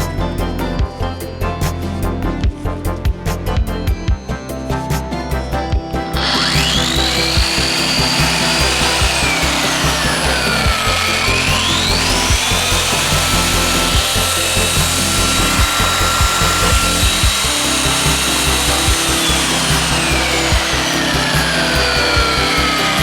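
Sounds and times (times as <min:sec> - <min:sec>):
wall sander motor running: 0:06.2 - 0:23.0.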